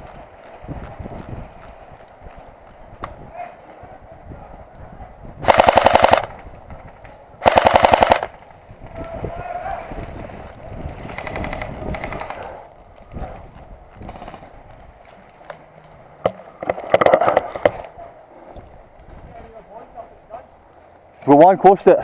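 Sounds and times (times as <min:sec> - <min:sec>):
airsoft gun firing bursts: 0:05.4 - 0:08.5, 0:11.1 - 0:12.5
distant airsoft gun bursts: 0:05.4 - 0:08.6.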